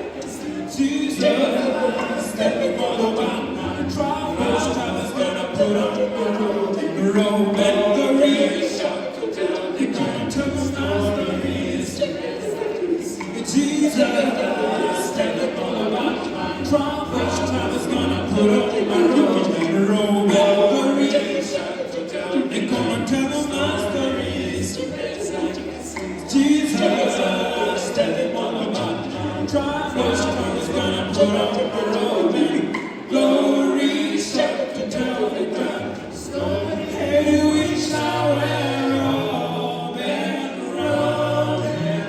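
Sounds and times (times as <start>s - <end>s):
choir singing a cappella: 0.0s - 42.0s.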